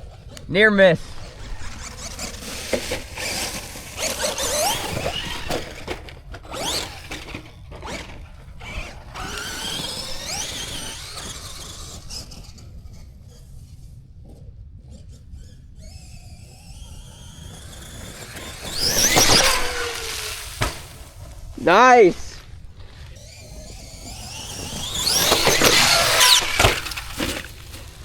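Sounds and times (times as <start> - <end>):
toy truck electric motor whining: 0.0 - 28.0
toy truck hitting the ground: 1.0 - 13.0, 15.4 - 21.6, 22.2 - 28.0.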